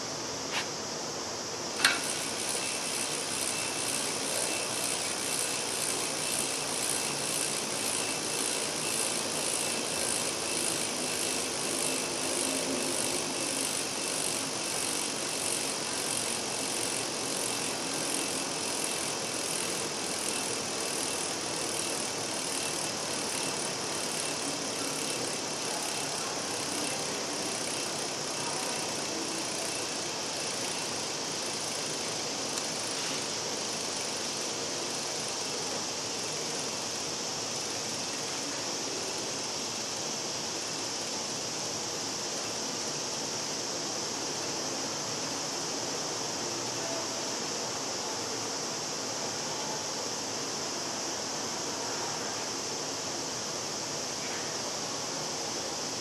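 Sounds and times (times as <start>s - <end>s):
cicadas buzzing: 0.0s - 56.0s
bicycle freehub ratchet clicking: 0.6s - 46.2s
sharp click: 1.8s - 3.0s.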